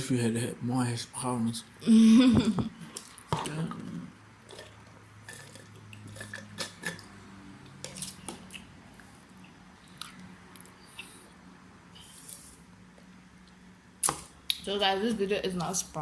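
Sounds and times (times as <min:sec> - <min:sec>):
people chewing food: 0:02.8 - 0:14.2.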